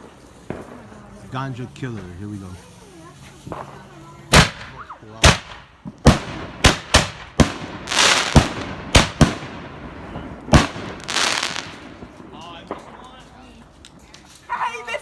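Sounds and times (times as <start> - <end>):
firework hissing crackle: 0.0 - 13.0
firework shells bursting: 3.5 - 13.0.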